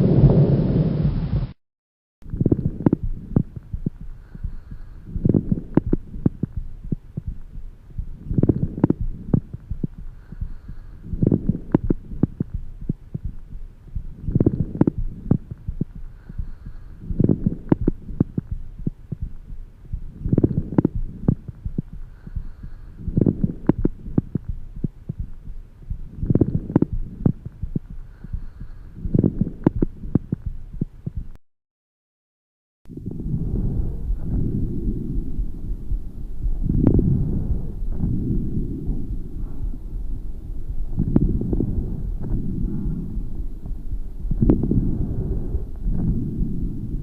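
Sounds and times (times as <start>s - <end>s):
steady low hum: 0.0s - 1.6s, 2.2s - 31.4s, 32.9s - 47.0s
breathing through stethoscope: 4.0s - 6.5s, 9.8s - 12.5s, 16.0s - 18.2s, 20.4s - 24.4s, 27.7s - 29.7s, 33.0s - 47.0s.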